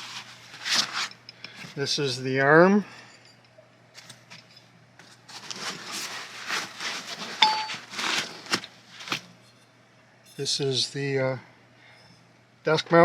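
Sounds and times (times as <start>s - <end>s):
metal parts rustling and scraping: 3.0s - 9.7s
sharp metallic clink: 7.4s - 7.8s.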